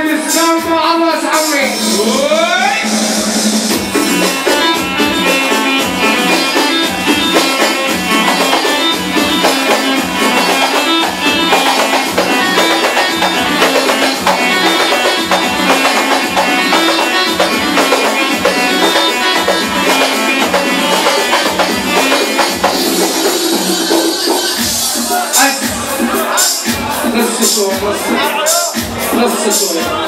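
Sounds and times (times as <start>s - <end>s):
live band playing dance music: 0.0s - 30.0s
percussion beat: 0.0s - 30.0s.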